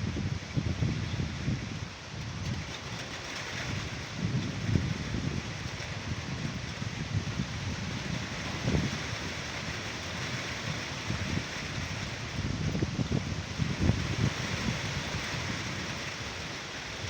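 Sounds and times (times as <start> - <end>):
wind buffeting microphone: 0.0 - 17.0
rain falling: 0.1 - 17.0.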